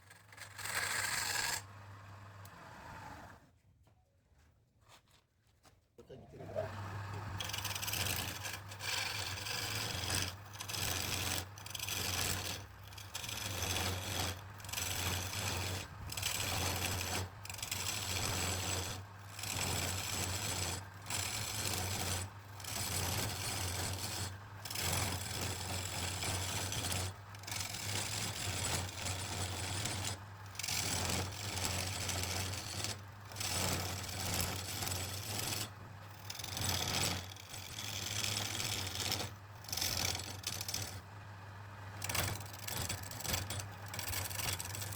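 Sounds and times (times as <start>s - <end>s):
tool scraping spinning wood: 0.0s - 3.4s, 6.3s - 44.9s
wood lathe motor humming: 0.4s - 3.4s, 6.4s - 41.2s, 41.9s - 44.9s.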